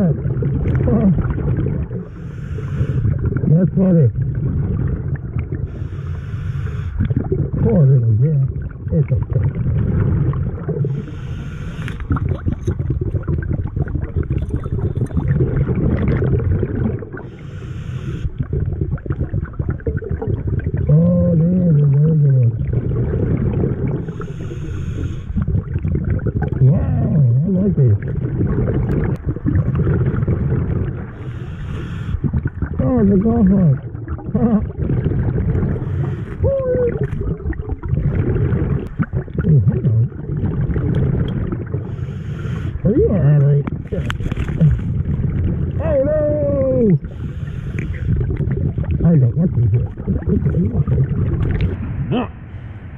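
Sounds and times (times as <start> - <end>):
muffled vocal sounds: 0.0 - 1.6, 3.4 - 4.2, 7.4 - 9.6, 20.8 - 22.7, 26.5 - 28.2, 32.7 - 35.0, 36.2 - 37.4, 39.2 - 40.2, 42.6 - 44.9, 45.7 - 47.2, 48.8 - 52.7
bubbles gurgling underwater: 0.0 - 6.1, 6.9 - 52.6
low underwater rumble: 0.0 - 52.9
regulator breath hiss: 2.1 - 3.0, 5.7 - 7.0, 11.0 - 12.0, 17.3 - 18.3, 24.1 - 25.4, 31.2 - 32.2.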